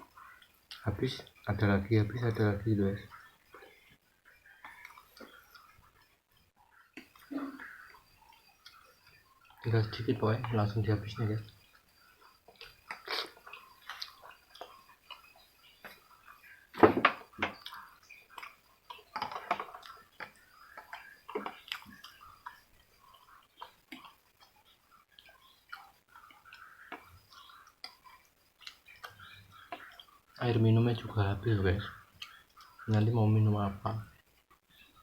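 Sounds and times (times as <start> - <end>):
man eating noodles: 11.7 - 15.4.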